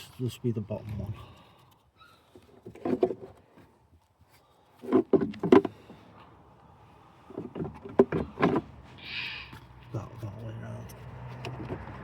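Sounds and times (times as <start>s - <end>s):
clicks and knocks of car parts: 4.8s - 6.0s, 7.3s - 8.7s.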